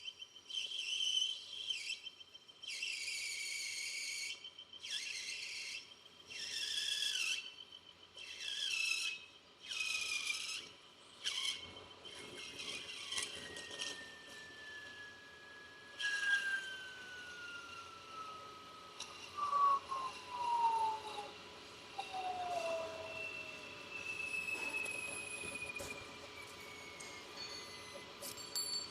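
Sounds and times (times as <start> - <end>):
steady whine: 0.0 - 28.9
lathe tool squealing on metal: 8.2 - 28.3.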